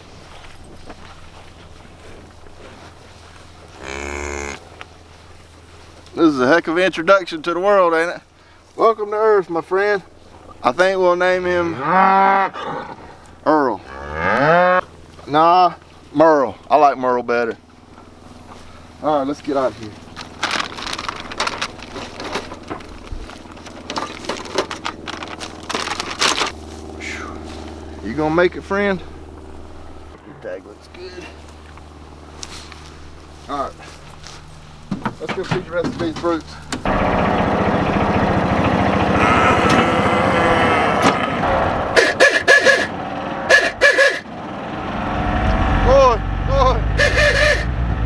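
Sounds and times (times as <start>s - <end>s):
crunching footsteps: 0.0s - 6.2s, 17.8s - 28.2s, 29.2s - 36.8s, 47.0s - 47.7s
vehicle engine running: 0.0s - 8.8s, 13.0s - 48.0s
short loud bursts: 41.5s - 44.3s, 47.0s - 47.8s
low hum: 42.8s - 48.0s.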